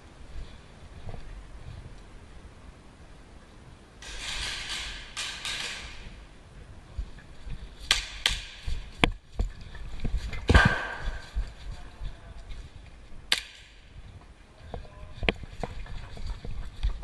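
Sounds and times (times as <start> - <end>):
sharp airsoft snaps: 13.3 - 13.8.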